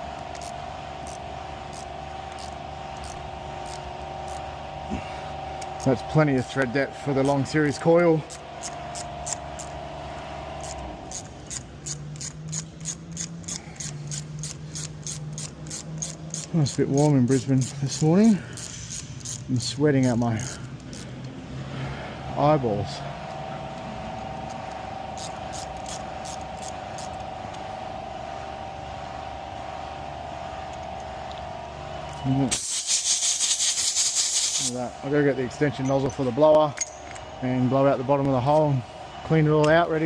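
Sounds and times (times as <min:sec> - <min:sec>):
machine motor humming: 0:00.0 - 0:32.6
ratchet wrench clicking: 0:00.2 - 0:04.5, 0:05.6 - 0:09.8, 0:10.6 - 0:21.3, 0:23.3 - 0:27.6, 0:32.1 - 0:34.7.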